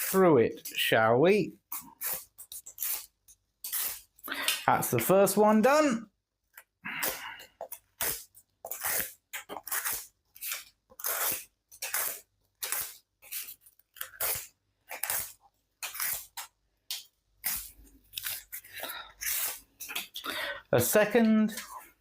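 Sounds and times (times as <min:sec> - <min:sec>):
knife cutting cardboard: 0:01.6 - 0:04.2, 0:06.9 - 0:20.2.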